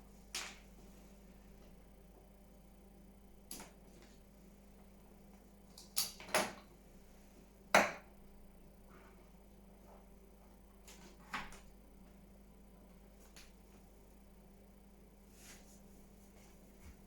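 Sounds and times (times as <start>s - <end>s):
faint electrical hum: 0.0s - 17.0s.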